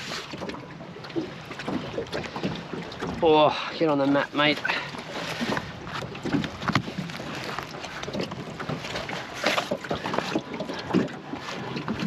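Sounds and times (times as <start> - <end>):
fish flapping and thumping: 0.0 - 3.2, 4.6 - 12.0
handling rustle: 5.0 - 10.2.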